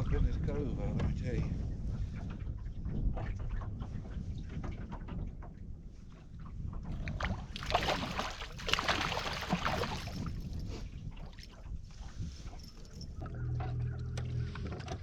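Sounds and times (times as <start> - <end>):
wind rumbling on microphone: 0.0 - 15.0
water splashing at boat: 2.0 - 13.3.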